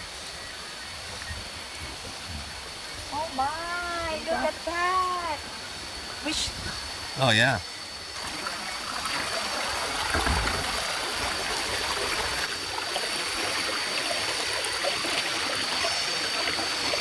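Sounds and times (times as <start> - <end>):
high-pitched insect drone: 2.6 - 10.0, 10.7 - 17.0
stream rushing over rocks: 8.2 - 17.0.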